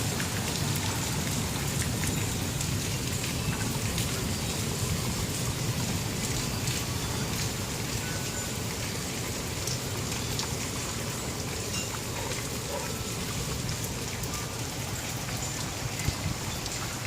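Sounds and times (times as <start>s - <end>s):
steady rain falling: 0.0s - 17.0s.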